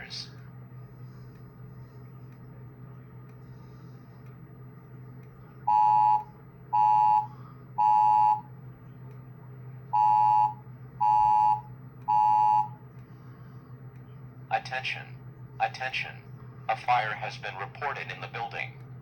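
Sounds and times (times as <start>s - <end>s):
fire alarm beeps: 5.7s - 8.5s, 9.9s - 12.8s.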